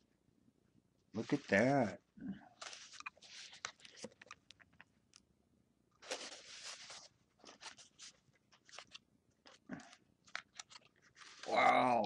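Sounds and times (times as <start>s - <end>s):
package wrapping rustle: 6.0s - 11.6s.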